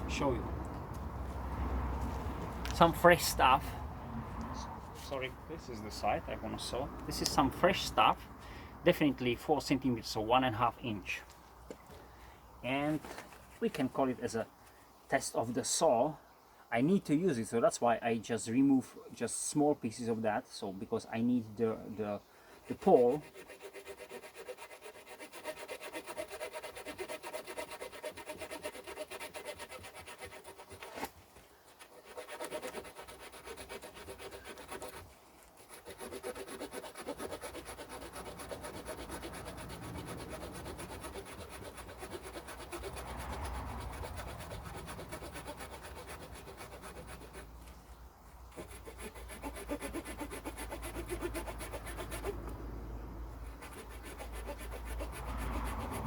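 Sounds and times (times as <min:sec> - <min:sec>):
small saw cutting wood: 0:22.6 - 0:31.1, 0:31.7 - 0:47.6, 0:48.5 - 0:52.6, 0:53.4 - 0:56.0.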